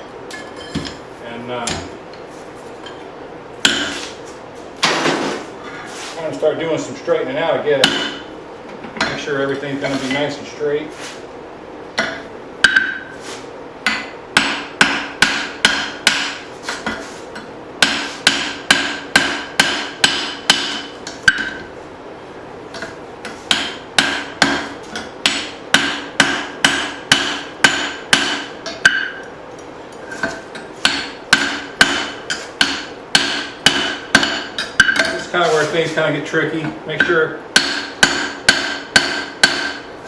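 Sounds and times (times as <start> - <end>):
hammer ringing on anvil: 7.8 - 8.3, 25.3 - 29.3, 30.8 - 35.2, 37.0 - 39.9.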